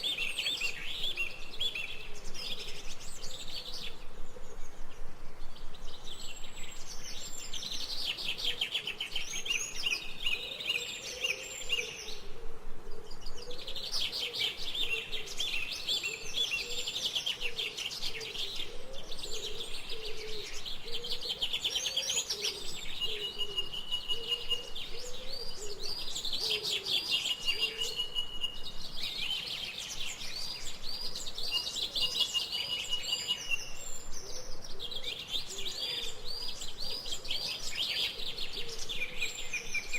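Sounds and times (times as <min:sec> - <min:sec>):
songbirds chirping and trilling: 0:00.0 - 0:39.9.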